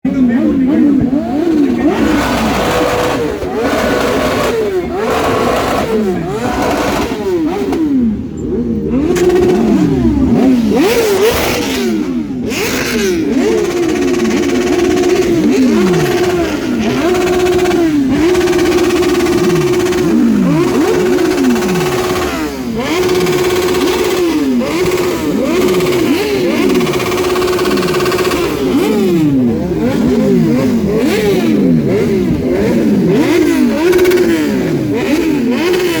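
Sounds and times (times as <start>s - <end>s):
motorcycle engines revving: 0.0s - 36.0s.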